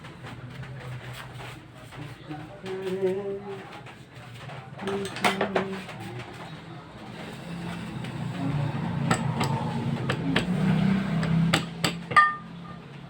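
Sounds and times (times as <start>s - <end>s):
tools tapping on metal: 9.1s - 12.5s.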